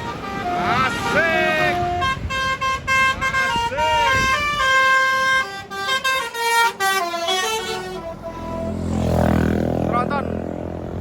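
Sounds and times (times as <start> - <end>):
multi-tone air horn melody: 0.0 - 8.8
heavy vehicle engine rumble: 0.0 - 11.0.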